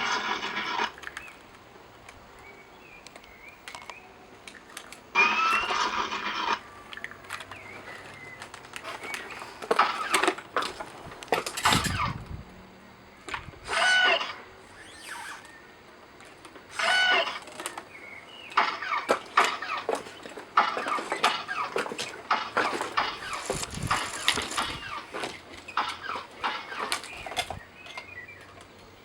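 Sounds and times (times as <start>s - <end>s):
short mechanical whirs: 5.1s - 6.8s, 7.4s - 12.4s, 13.2s - 15.8s, 16.7s - 17.9s, 22.3s - 27.6s.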